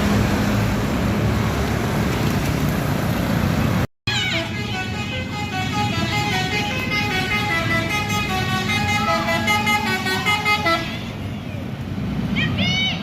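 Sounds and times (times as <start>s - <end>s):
bus engines rumbling: 0.0s - 13.0s
musical bus horn melody: 4.1s - 11.2s.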